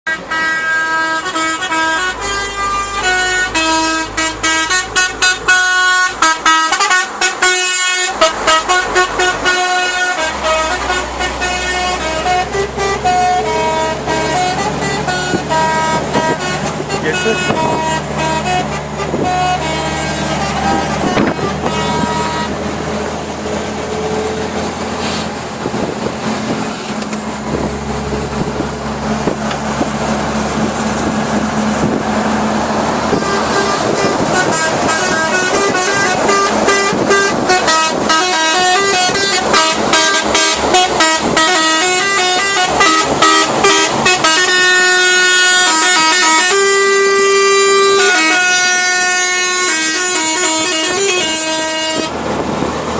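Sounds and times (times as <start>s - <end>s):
musical air horn playing a tune: 0.1s - 22.7s, 33.0s - 52.2s
truck engine running: 0.1s - 52.9s.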